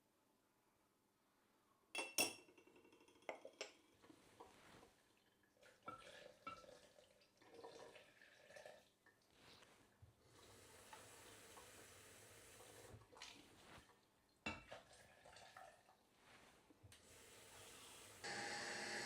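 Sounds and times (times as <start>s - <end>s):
dishes clinking: 2.0s - 3.8s
kitchenware knocks and clatter: 2.0s - 3.8s.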